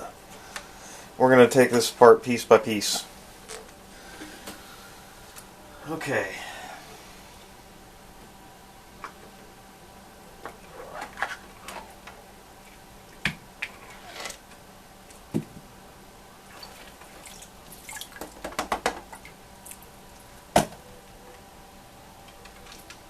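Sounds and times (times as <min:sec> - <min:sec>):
water dripping and splashing: 0:16.5 - 0:18.5.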